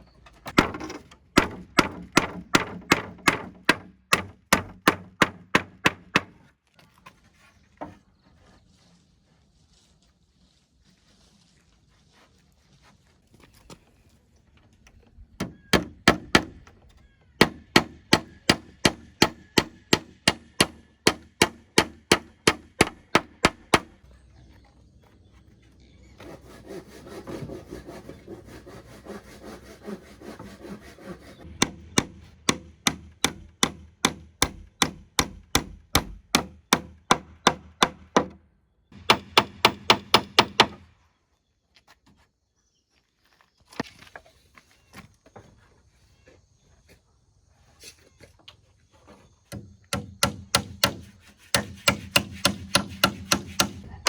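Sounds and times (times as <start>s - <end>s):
sharp strokes on wood: 0.5s - 6.3s, 26.2s - 38.3s, 49.5s - 54.0s
rubbing on wood: 26.2s - 31.5s, 50.2s - 54.0s.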